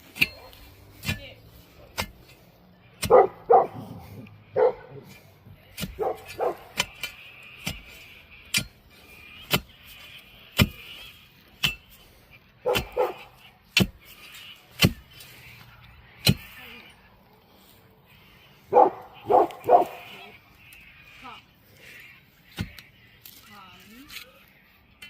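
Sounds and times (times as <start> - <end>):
axe chopping wood: 1.9 - 2.3, 5.7 - 7.9, 10.6 - 10.8, 12.7 - 14.1, 14.7 - 15.1, 16.2 - 16.5
dog barking: 3.0 - 4.0, 4.6 - 5.0, 6.0 - 6.7, 12.6 - 13.3, 18.7 - 20.3.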